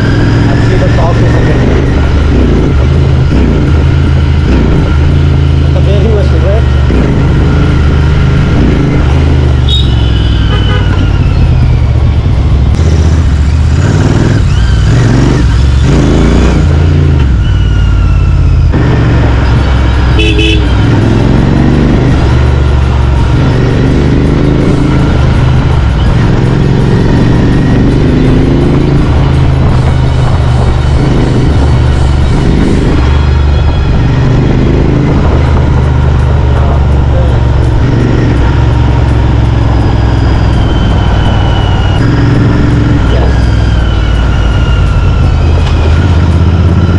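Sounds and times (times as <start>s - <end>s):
motorcycle engine revving: 0.0s - 46.9s
vehicle horns tooting: 9.6s - 11.3s, 20.0s - 21.4s.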